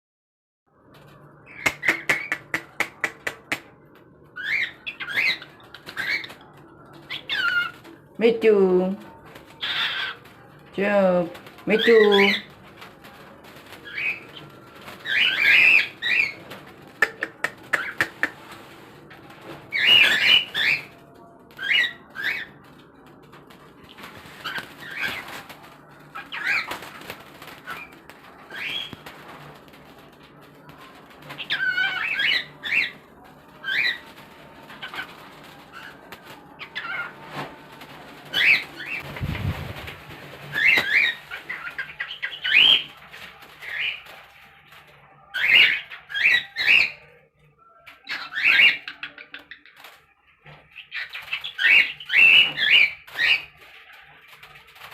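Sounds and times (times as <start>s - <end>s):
cockatiel chattering: 17.0s - 18.4s.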